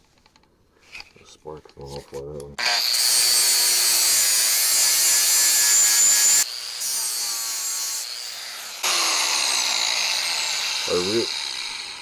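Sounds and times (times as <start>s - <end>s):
grinder grinding metal: 2.6s - 12.0s.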